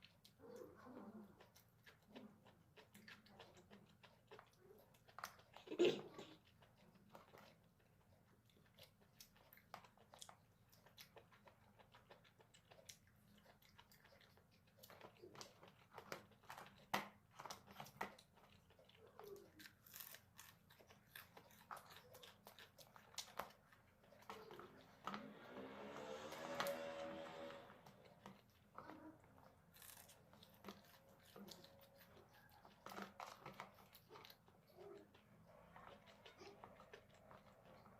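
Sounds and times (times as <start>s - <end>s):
person chewing noodles: 0.0s - 37.9s.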